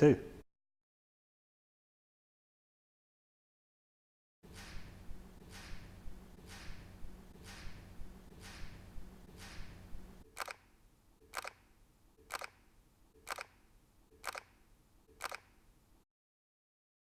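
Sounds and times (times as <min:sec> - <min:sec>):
camera shutter clicks: 0:10.3 - 0:10.7, 0:11.3 - 0:13.6, 0:14.2 - 0:15.7.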